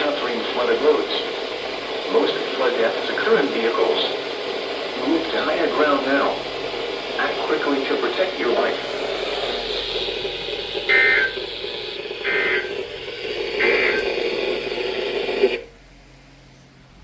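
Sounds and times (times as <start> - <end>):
radio hiss and hum: 0.0 - 16.6
digital data bursts: 7.2 - 15.1.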